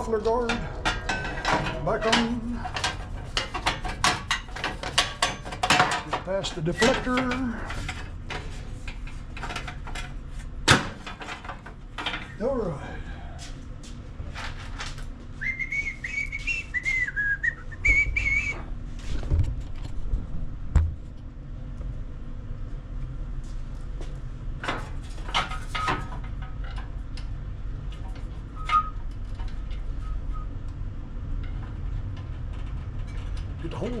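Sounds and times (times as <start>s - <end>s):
person whistling: 15.4s - 18.6s.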